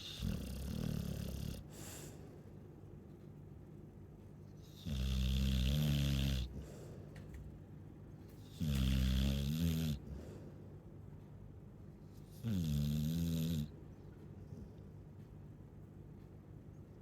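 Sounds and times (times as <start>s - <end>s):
dog snoring: 0.0s - 2.1s, 4.6s - 6.8s, 8.4s - 10.2s, 12.2s - 13.7s
dog breathing quietly: 0.0s - 2.6s, 4.6s - 7.3s.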